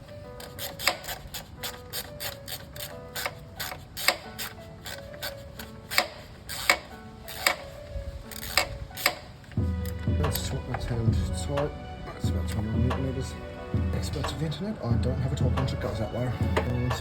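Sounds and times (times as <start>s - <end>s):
socket ratchet clicking: 0.4s - 9.6s.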